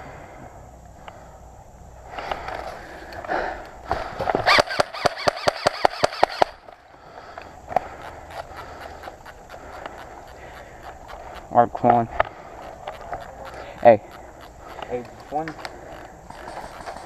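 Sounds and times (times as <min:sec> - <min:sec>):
airsoft gun rapid shots: 0:04.4 - 0:06.6
rustling: 0:06.0 - 0:17.0.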